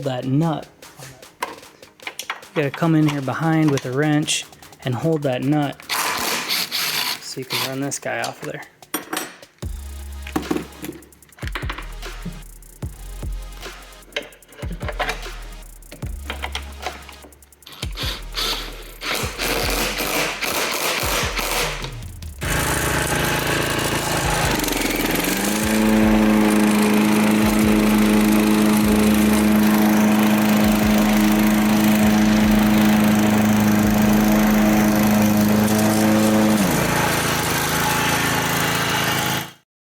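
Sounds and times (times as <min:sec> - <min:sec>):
clicking and knocking: 0:01.4 - 0:09.6, 0:14.1 - 0:15.3, 0:15.9 - 0:22.6
mower engine running: 0:17.7 - 0:39.6
steady whine: 0:21.4 - 0:36.3.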